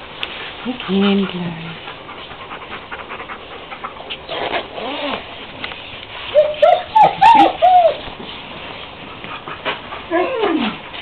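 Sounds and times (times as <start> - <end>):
dog whining: 4.2 - 5.3, 6.3 - 8.1, 10.1 - 10.9.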